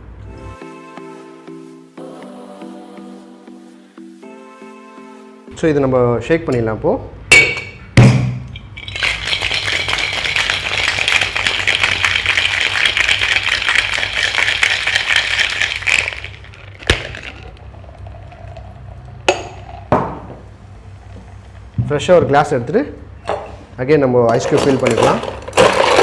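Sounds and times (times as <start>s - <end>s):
ice cubes rattling in a shaker: 8.6s - 18.6s, 24.4s - 26.0s.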